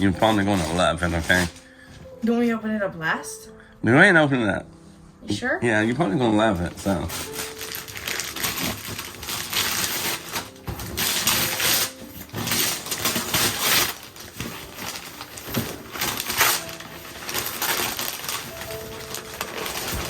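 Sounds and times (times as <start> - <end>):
wrapping paper tearing: 0.0 - 1.7, 6.2 - 20.0.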